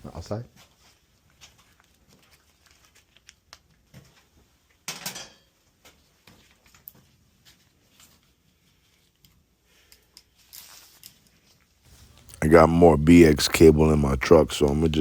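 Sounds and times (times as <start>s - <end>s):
light clicks and metal clatter of tools: 9.1s - 11.6s
scrape or rustle: 9.8s - 11.7s.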